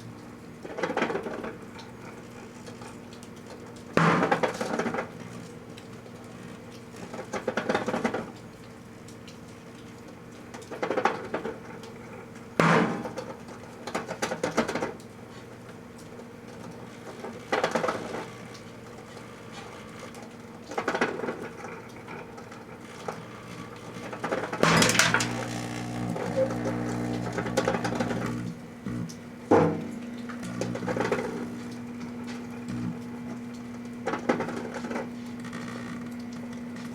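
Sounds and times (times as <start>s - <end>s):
microwave oven humming: 0.0s - 36.9s
crackling and popping: 23.1s - 36.9s.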